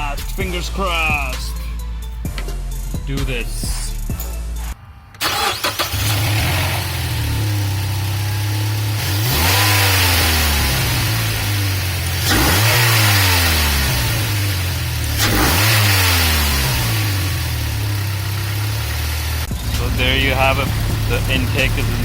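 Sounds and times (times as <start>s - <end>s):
car engine starting and revving: 4.6s - 22.0s.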